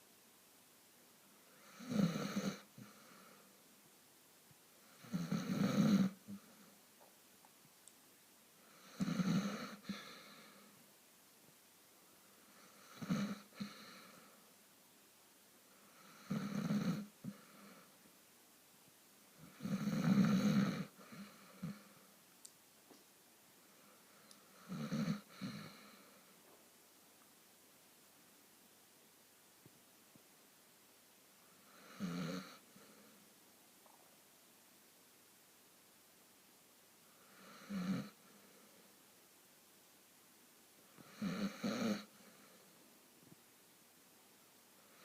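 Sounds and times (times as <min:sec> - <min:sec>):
heavy snoring: 0:01.6 - 0:03.3, 0:04.9 - 0:06.4, 0:08.7 - 0:10.6, 0:12.5 - 0:14.2, 0:15.9 - 0:17.9, 0:19.4 - 0:21.9, 0:24.6 - 0:26.1, 0:31.6 - 0:32.6, 0:37.2 - 0:38.2, 0:41.0 - 0:42.1
snorting: 0:05.0 - 0:06.5, 0:08.7 - 0:10.6, 0:16.0 - 0:17.9, 0:19.4 - 0:22.0
person snoring: 0:19.4 - 0:21.8.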